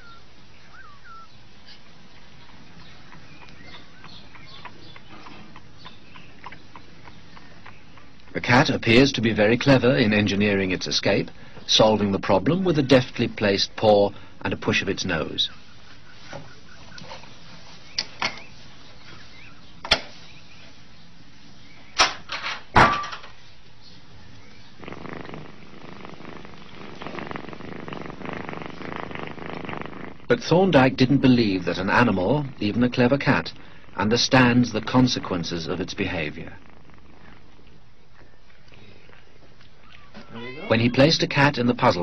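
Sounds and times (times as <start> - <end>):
cat meowing: 39.9 - 41.1.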